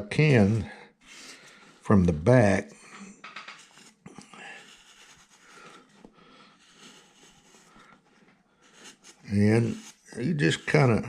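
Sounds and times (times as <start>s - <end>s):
carving gouge scraping wood: 0.0s - 1.2s, 3.3s - 8.0s, 8.6s - 11.0s.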